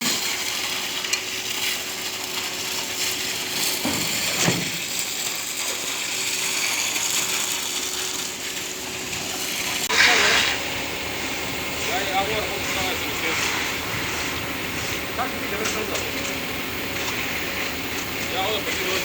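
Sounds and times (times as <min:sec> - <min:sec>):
machinery rattling: 0:09.6 - 0:19.0
faint hum: 0:09.9 - 0:19.0
loud mechanical sweeps: 0:09.9 - 0:19.0.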